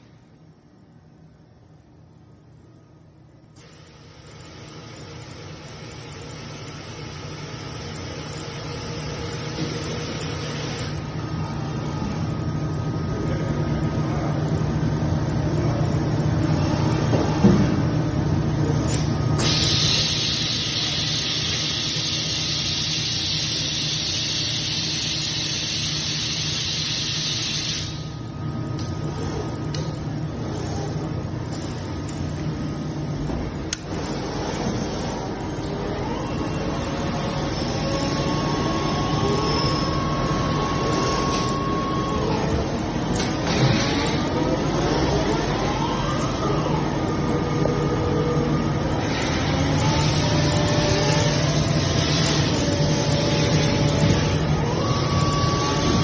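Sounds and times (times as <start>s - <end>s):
low machine hum: 0.0s - 56.0s
machine hiss: 3.6s - 11.0s, 18.9s - 28.2s
lathe machine hum: 33.8s - 56.0s.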